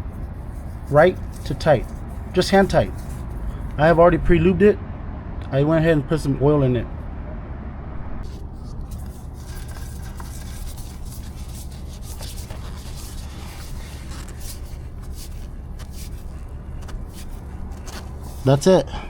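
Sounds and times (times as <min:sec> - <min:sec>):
hand rubbing on oil filter: 0:00.0 - 0:04.1, 0:08.2 - 0:19.0
steady low hum: 0:00.0 - 0:19.0.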